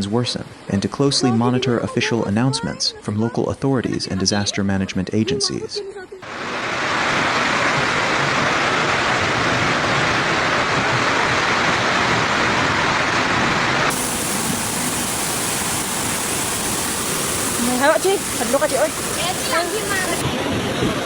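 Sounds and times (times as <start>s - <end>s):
rushing flood water: 6.2s - 21.0s.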